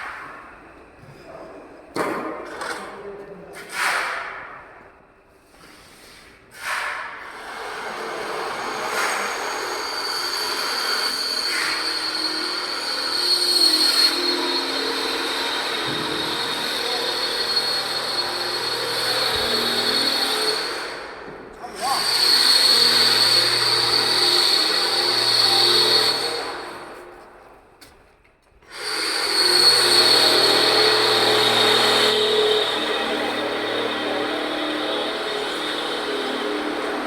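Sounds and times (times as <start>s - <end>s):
machine noise with high whine: 7.3s - 27.4s, 28.7s - 37.0s.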